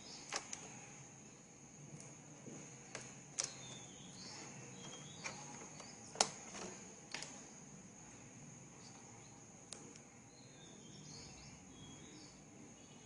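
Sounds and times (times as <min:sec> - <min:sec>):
plastic clicks and snaps: 0:05.3 - 0:07.4, 0:09.7 - 0:10.1.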